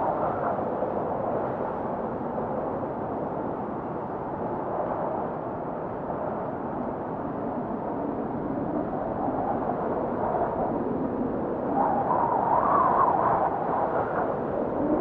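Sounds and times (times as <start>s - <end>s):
wind howling: 7.2s - 15.0s.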